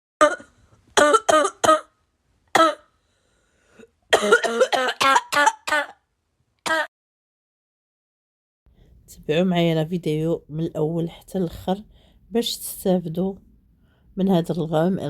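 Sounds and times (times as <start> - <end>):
person coughing: 0.2 - 1.9, 2.6 - 2.9, 3.8 - 6.0, 6.7 - 6.9.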